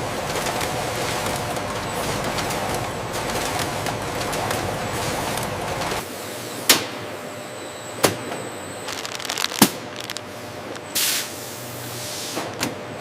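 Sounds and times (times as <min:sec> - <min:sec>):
factory machinery humming: 0:00.0 - 0:13.0
small clicks: 0:08.9 - 0:10.9
hiss of air: 0:10.3 - 0:12.5.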